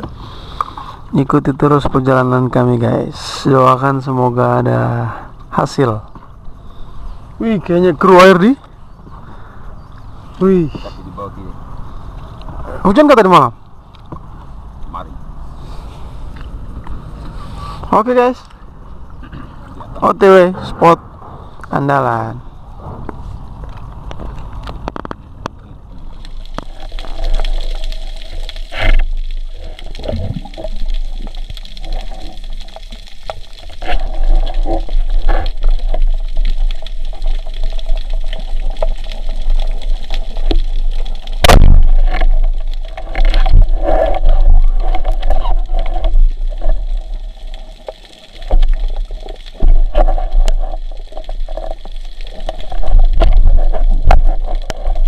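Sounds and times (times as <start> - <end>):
boat engine hum: 13.7 - 27.4
water splashing against hull: 22.6 - 55.0.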